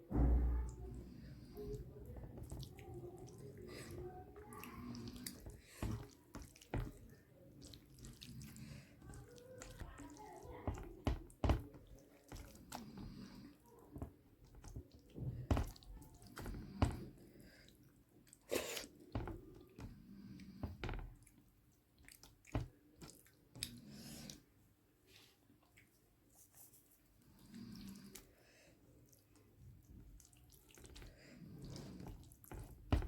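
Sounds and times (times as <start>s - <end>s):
wet chewing and lip smacking: 28.9s - 32.5s.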